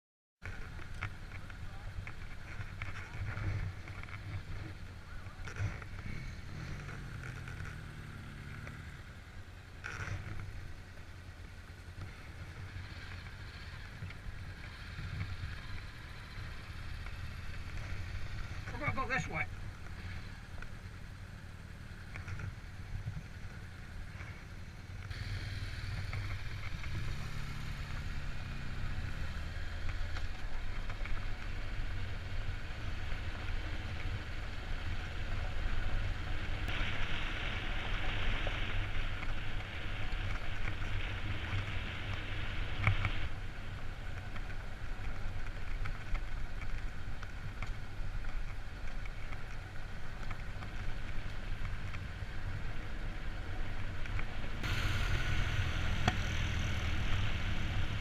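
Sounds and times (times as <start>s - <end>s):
vehicle engine running: 0.4s - 58.0s
hiss of tyres or wind: 19.6s - 58.0s.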